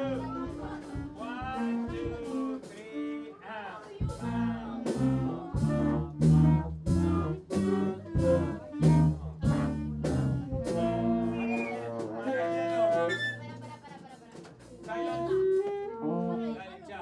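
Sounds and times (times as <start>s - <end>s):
low bass line: 0.0s - 1.9s, 4.1s - 13.7s
school band playing: 0.0s - 3.3s, 3.9s - 16.8s.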